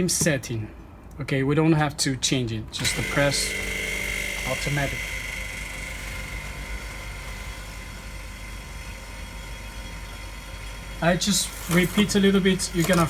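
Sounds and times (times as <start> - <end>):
machine whirring with low hum: 2.7 - 13.0
high steady tone: 2.8 - 13.0.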